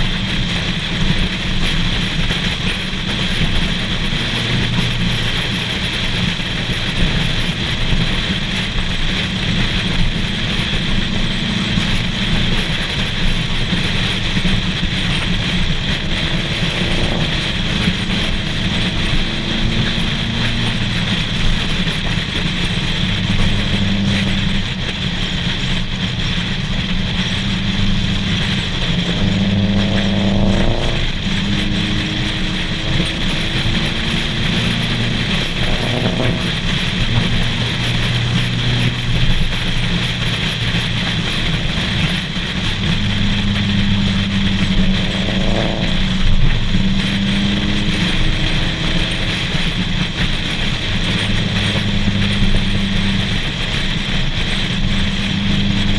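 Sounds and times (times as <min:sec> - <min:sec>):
car engines revving: 0:00.0 - 0:55.9
road noise: 0:00.0 - 0:55.9.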